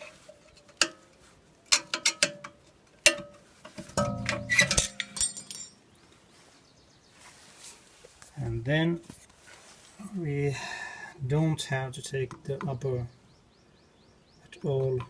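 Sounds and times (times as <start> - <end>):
metallic clatter: 3.9 - 5.8
hand tools clicking on metal: 4.0 - 5.7
light metal tinkles: 4.0 - 5.9.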